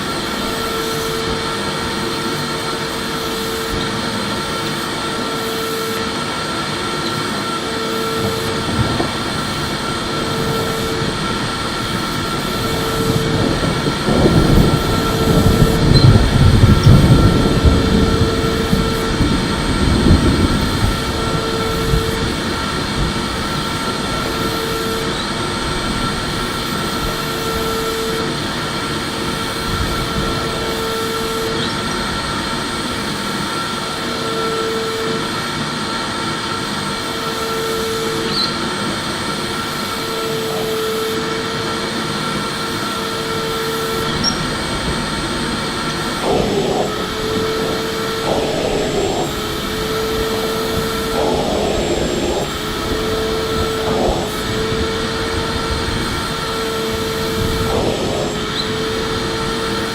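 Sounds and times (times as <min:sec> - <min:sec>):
vacuum cleaner running: 0:00.0 - 0:59.9
deep loud rumble: 0:08.1 - 0:27.1, 0:42.9 - 0:59.9.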